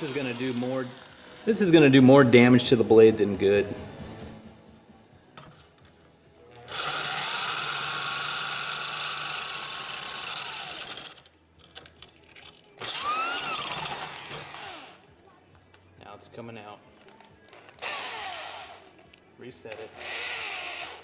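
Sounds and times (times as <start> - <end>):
impact wrench motor whining: 0.0 - 1.5, 6.7 - 11.3, 12.8 - 15.0, 17.6 - 19.0, 19.7 - 21.0.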